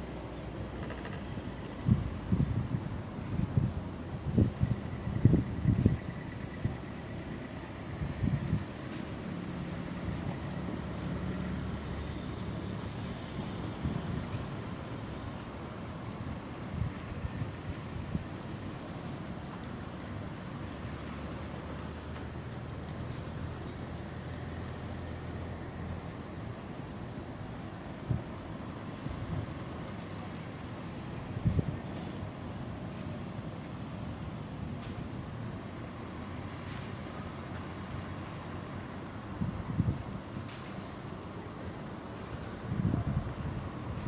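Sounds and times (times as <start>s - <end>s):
low engine hum: 0.0s - 44.0s.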